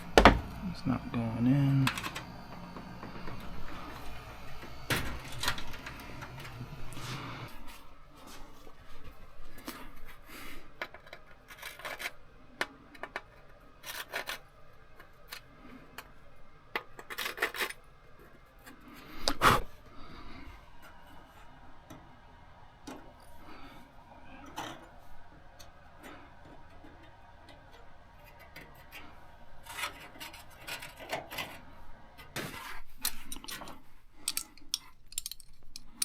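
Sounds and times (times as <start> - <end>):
metal rubbing scrapes: 0.0 - 8.6, 22.8 - 33.4
loud knock on metal: 0.2 - 0.6
metal parts clicking and tapping: 33.0 - 36.0.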